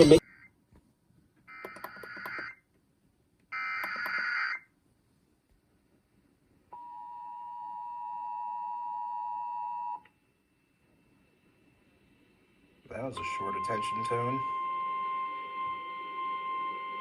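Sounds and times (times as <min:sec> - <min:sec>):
two-tone attention signal: 0:13.1 - 0:17.0.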